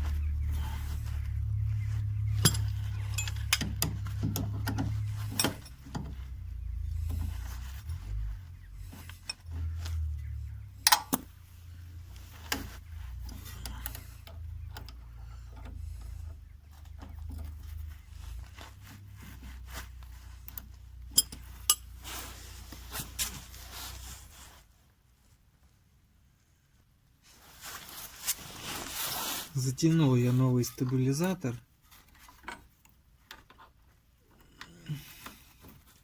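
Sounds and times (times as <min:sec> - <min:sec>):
low handling rumble: 0:00.0 - 0:24.5
metal tools clinking: 0:02.3 - 0:07.6, 0:20.4 - 0:22.0
sharp metallic clicks: 0:10.8 - 0:11.3.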